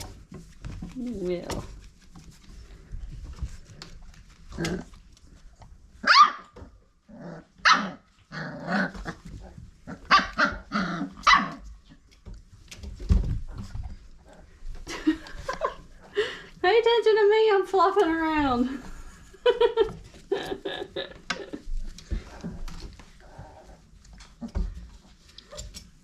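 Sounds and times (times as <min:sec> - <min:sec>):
puppies barking and growling: 0:03.5 - 0:12.0.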